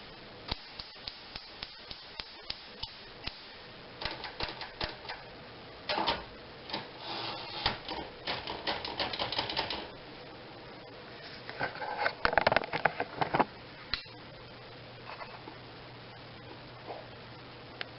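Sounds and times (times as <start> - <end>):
manual typewriter key strikes: 8.2 - 9.8.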